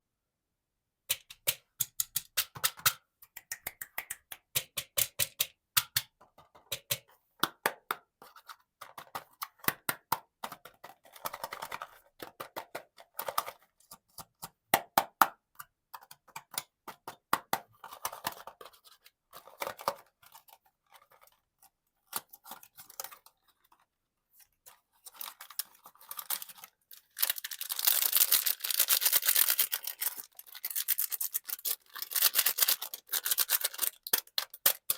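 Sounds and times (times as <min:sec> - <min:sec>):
plastic packaging crinkling: 0:25.0 - 0:34.9.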